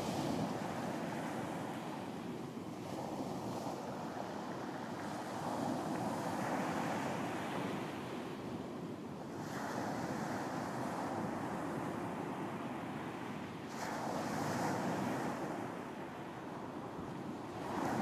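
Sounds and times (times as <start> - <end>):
ocean waves washing onto beach: 0.0 - 18.0
wind: 0.0 - 18.0.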